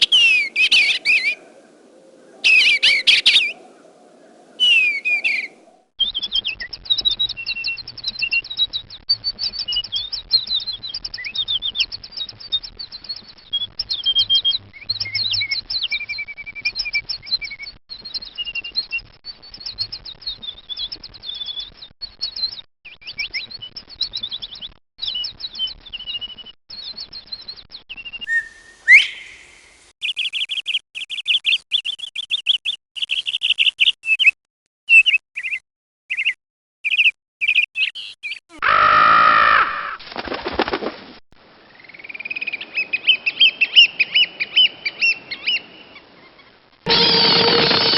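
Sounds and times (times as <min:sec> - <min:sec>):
songbird singing chirps and trills: 0:00.0 - 0:38.5, 0:41.6 - 0:46.6
bird call with repeated chirps: 0:04.6 - 0:38.5, 0:41.8 - 0:47.9.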